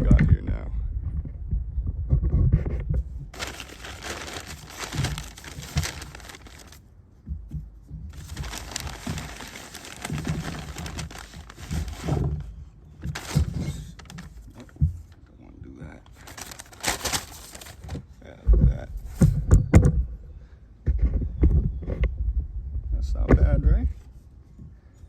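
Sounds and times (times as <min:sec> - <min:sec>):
potatoes rustling while handled: 0:03.4 - 0:06.8, 0:08.1 - 0:14.6, 0:16.1 - 0:18.0.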